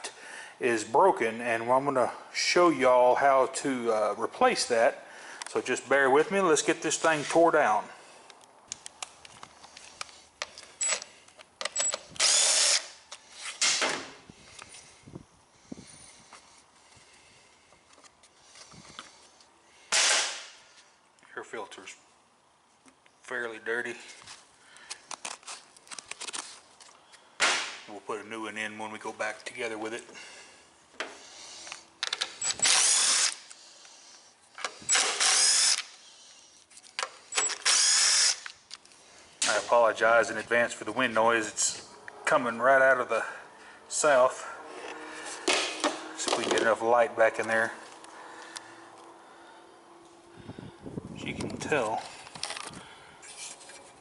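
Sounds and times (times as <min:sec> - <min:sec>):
tool handling clicks: 0:08.2 - 0:13.7, 0:31.6 - 0:33.6
power drill bursts: 0:11.7 - 0:13.9, 0:19.9 - 0:20.5, 0:32.3 - 0:33.5, 0:34.7 - 0:36.1, 0:37.3 - 0:38.5.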